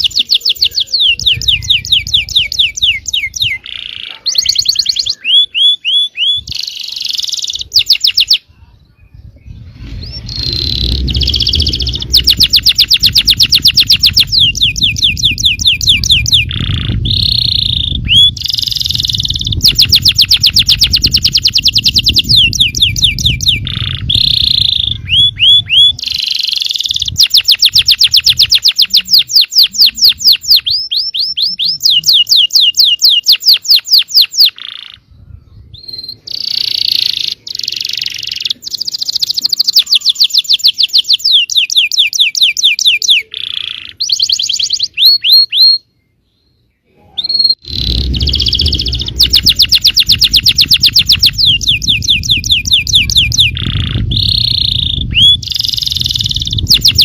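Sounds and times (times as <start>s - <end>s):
canary singing trills: 0.0s - 57.0s
low rumble: 8.8s - 26.0s, 47.5s - 57.0s.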